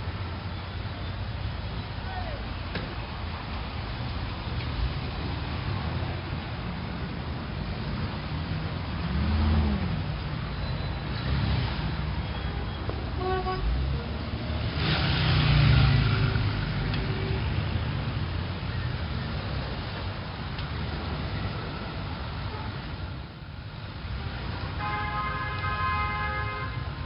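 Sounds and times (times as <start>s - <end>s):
cars passing: 0.0s - 27.0s
low traffic rumble: 0.0s - 27.0s
car horn: 12.5s - 13.8s, 24.8s - 27.0s.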